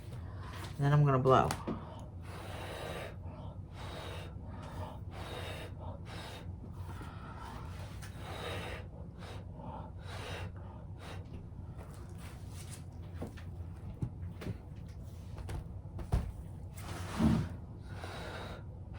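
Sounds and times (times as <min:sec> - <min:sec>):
person blowing forceful breaths: 0:02.2 - 0:11.4.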